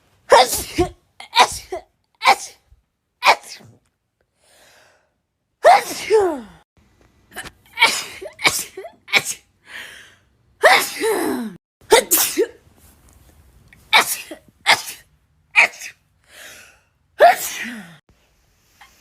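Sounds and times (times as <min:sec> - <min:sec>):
person sneezing: 0:00.3 - 0:02.6, 0:03.2 - 0:03.8, 0:05.6 - 0:06.6, 0:07.3 - 0:09.5, 0:10.6 - 0:12.6, 0:13.8 - 0:16.0, 0:17.2 - 0:18.0.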